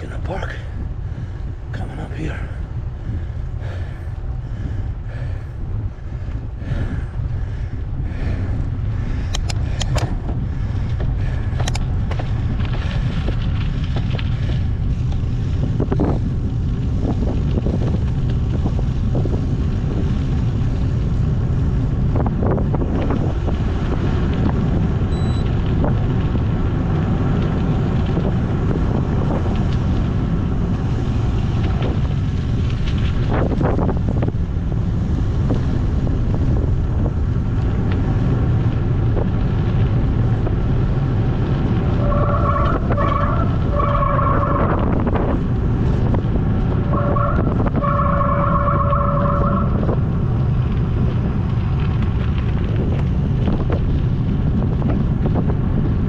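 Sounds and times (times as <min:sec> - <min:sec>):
wind buffeting microphone: 0:00.0 - 0:56.0
sharp clicks: 0:09.3 - 0:10.2, 0:11.5 - 0:12.2.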